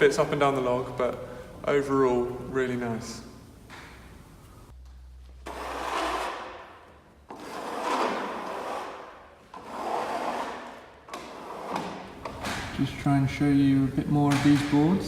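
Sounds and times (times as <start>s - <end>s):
wood scraping on wood: 5.4s - 12.4s.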